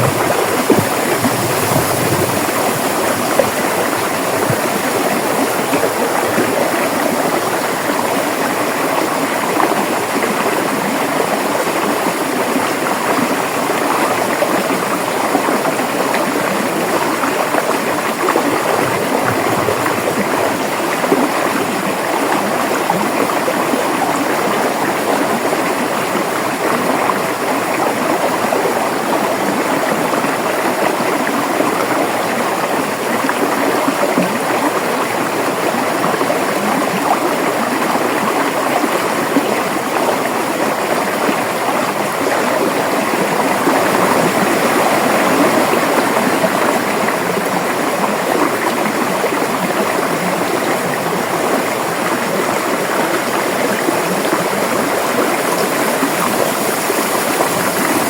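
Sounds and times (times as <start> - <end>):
river water flowing and gurgling: 0.0 - 58.0.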